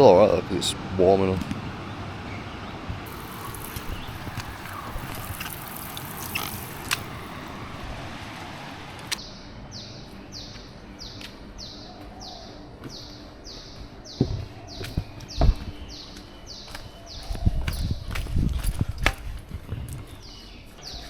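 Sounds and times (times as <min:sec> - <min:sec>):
clicks: 0:03.1 - 0:07.6.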